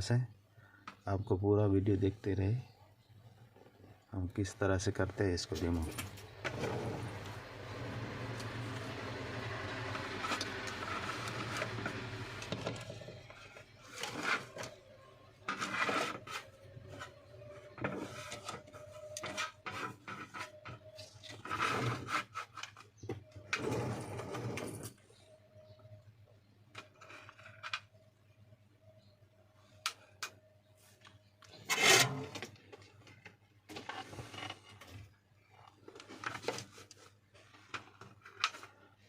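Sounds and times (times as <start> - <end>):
mechanical whirr: 6.0 - 13.1
small tools clicking and scraping: 9.6 - 14.8.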